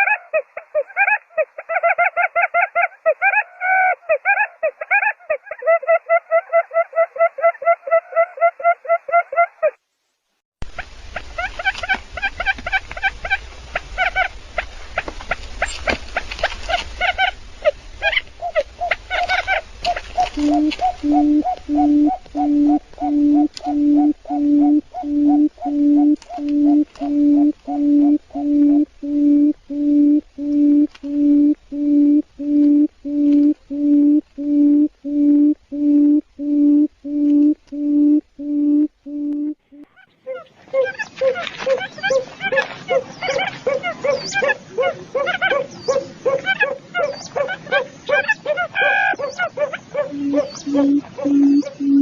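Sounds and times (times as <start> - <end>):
quail chirping calls: 11.4 - 52.0
steady low hum: 17.1 - 39.9.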